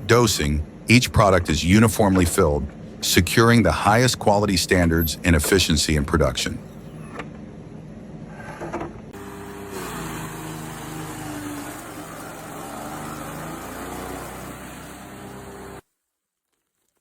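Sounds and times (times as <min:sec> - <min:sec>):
industrial machinery humming: 0:09.1 - 0:15.8.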